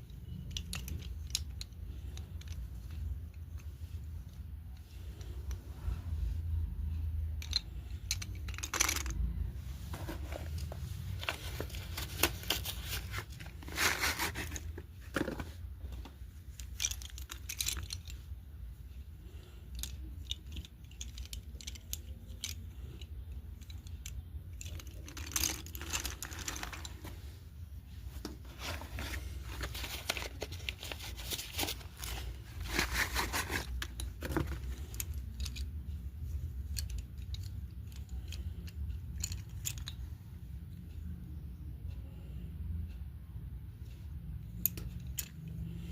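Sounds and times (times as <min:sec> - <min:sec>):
pencils clicking together: 0:00.2 - 0:03.7, 0:07.3 - 0:09.3, 0:16.4 - 0:18.3, 0:19.2 - 0:27.1.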